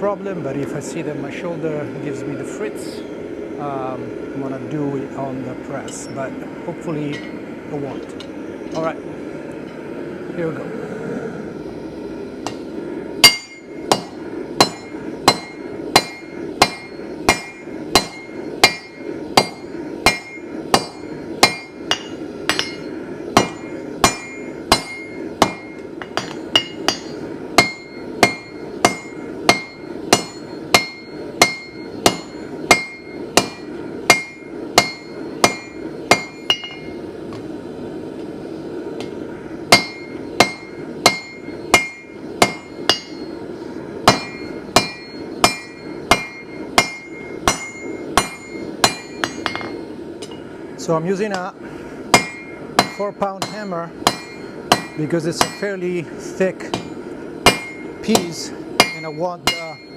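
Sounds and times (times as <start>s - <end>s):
hammer striking steel on anvil: 7.0s - 7.4s, 12.4s - 37.0s, 39.0s - 43.4s, 44.0s - 50.4s, 51.3s - 55.8s, 56.6s - 59.9s.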